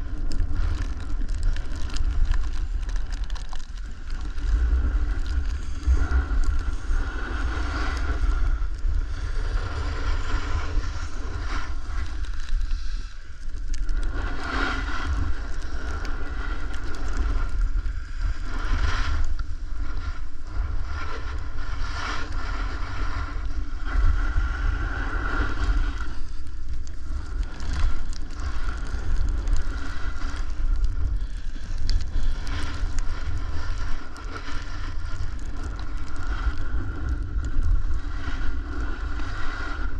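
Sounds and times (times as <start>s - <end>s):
snowboard scraping on snow: 4.5s - 8.4s, 9.2s - 12.1s.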